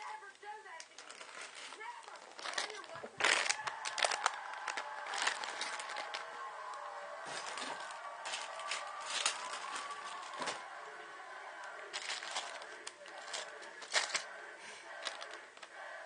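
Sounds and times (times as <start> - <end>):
faint voice: 1.7 - 16.0
plastic bricks clicking and rattling: 11.9 - 14.3, 15.0 - 15.7.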